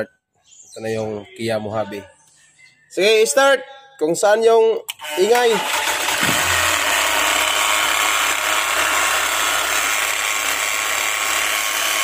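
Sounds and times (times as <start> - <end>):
whirring rasp: 5.0 - 12.0
diesel engine starting and running: 5.6 - 10.6.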